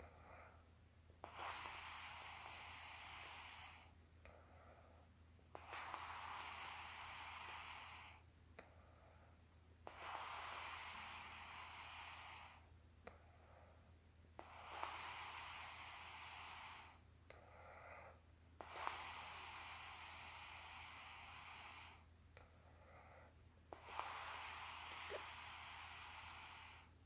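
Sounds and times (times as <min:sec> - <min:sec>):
woman snoring: 0:01.2 - 0:03.9, 0:05.5 - 0:08.2, 0:09.8 - 0:12.7, 0:14.4 - 0:17.0, 0:18.6 - 0:22.0, 0:23.7 - 0:26.9.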